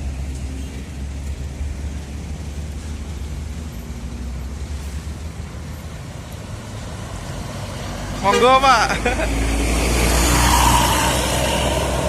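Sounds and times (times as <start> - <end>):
bus engine rumbling: 0.0 - 12.0
road traffic noise: 0.0 - 12.0.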